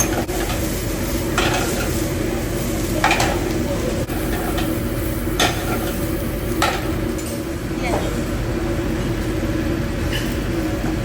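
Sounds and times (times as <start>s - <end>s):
restaurant background hum: 0.0s - 11.0s
dishes and cutlery clattering: 3.0s - 3.5s, 5.4s - 6.0s, 10.0s - 10.4s.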